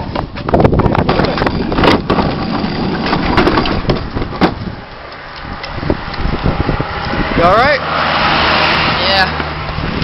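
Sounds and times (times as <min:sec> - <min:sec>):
vehicle rumbling and rushing: 0:00.0 - 0:10.0
knocks and clatter: 0:00.2 - 0:04.8.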